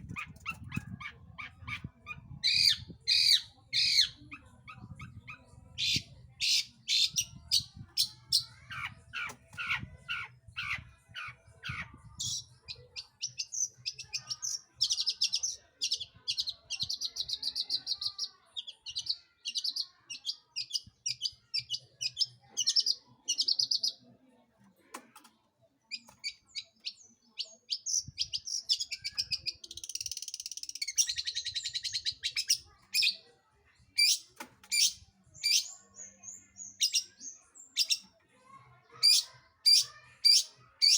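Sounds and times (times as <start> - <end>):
fast buzzy chatter: 0.0 - 3.0
shrike singing chirps and trills: 34.0 - 38.0, 39.0 - 40.9.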